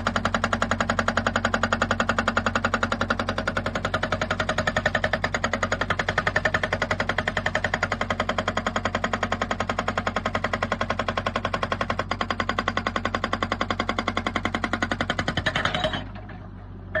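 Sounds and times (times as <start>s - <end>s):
hydraulic rock breaker hammering: 0.0s - 17.0s
machine engine drone: 15.2s - 17.0s.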